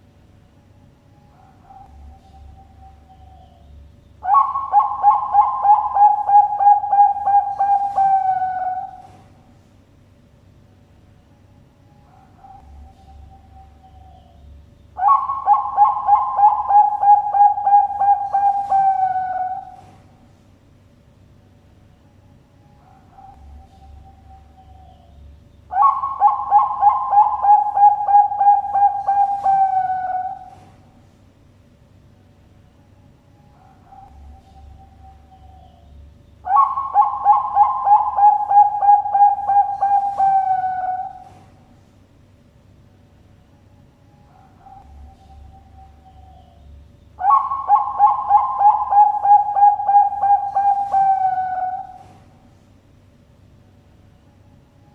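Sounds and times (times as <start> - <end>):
dove cooing: 4.2 - 9.5, 15.0 - 20.2, 25.7 - 31.0, 36.4 - 41.7, 47.2 - 52.5.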